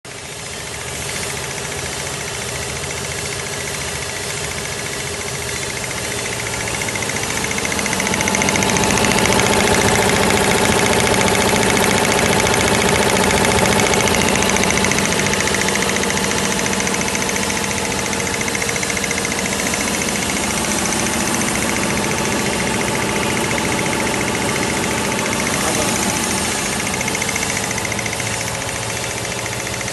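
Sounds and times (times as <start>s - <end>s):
air compressor clattering: 0.1s - 29.9s.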